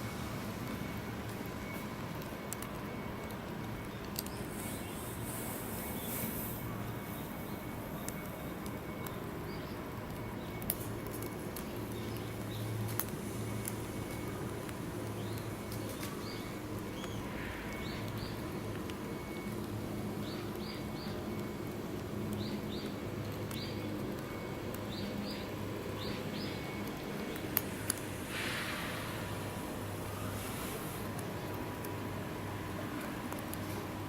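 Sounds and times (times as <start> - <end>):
steady low hum: 0.0 - 34.0
small birds chirping: 11.6 - 12.8, 15.0 - 18.5, 20.2 - 21.3, 22.3 - 24.0, 24.8 - 27.6.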